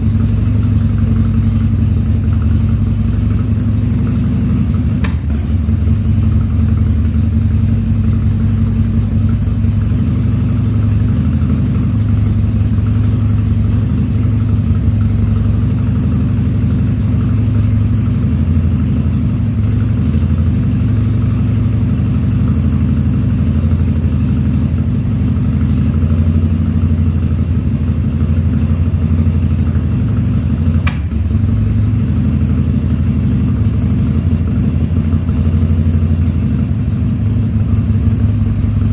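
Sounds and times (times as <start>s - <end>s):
motorcycle engine idling: 0.0s - 38.9s
brief click: 30.8s - 31.2s.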